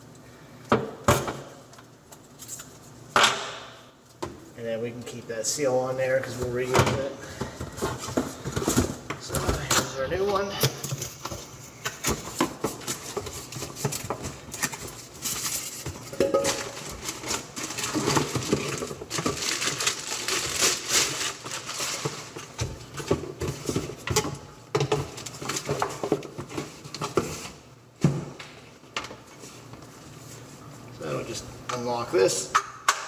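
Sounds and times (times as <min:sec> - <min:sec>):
parts clattering and rustling: 0:06.3 - 0:28.4.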